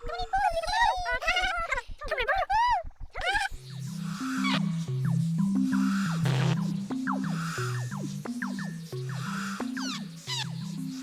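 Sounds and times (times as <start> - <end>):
playful music with bass line: 3.0 - 11.0.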